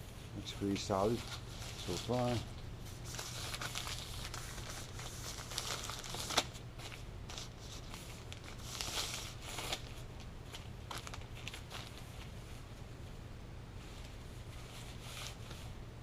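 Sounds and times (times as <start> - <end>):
plastic packaging crinkling: 0.6 - 12.3.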